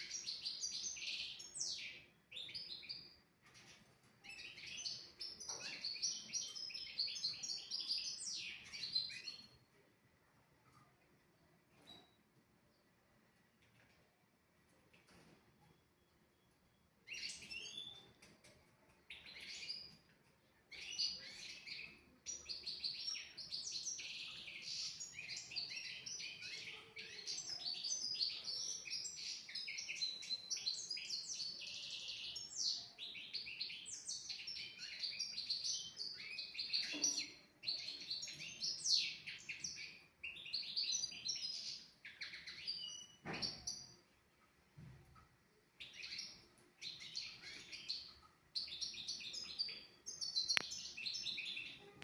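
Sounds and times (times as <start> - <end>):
finch twittering song: 45.8 - 52.0.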